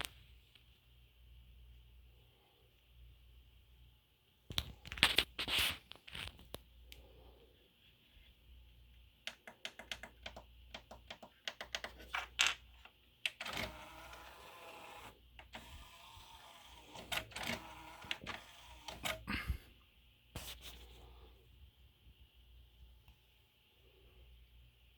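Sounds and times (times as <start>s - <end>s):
disc player mechanism clicking: 13.3s - 19.3s
motor whirring: 13.4s - 19.2s.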